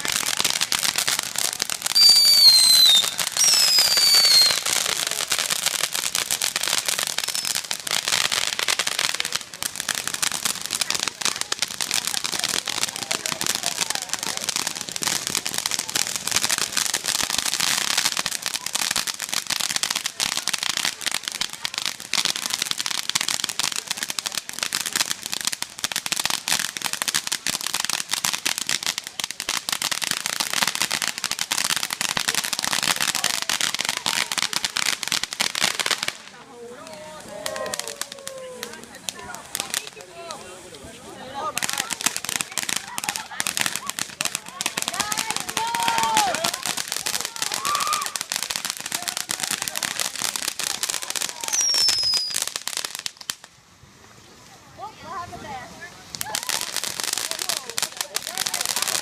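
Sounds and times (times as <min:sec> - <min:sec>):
fireworks crackling: 0:00.0 - 0:59.0
descending firework whistles: 0:01.9 - 0:04.7, 0:07.2 - 0:07.7, 0:51.3 - 0:52.5.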